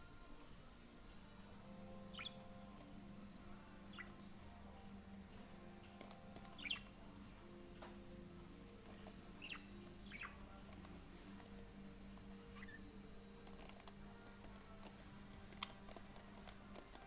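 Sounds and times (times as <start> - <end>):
budgie chirping: 2.0 - 2.5, 3.8 - 4.3, 6.3 - 7.0, 9.3 - 10.6, 12.5 - 12.9.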